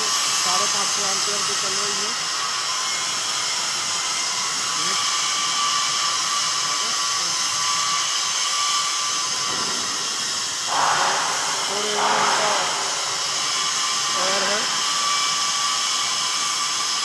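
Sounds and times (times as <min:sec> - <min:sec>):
high whining tones: 0:10.7 - 0:16.0.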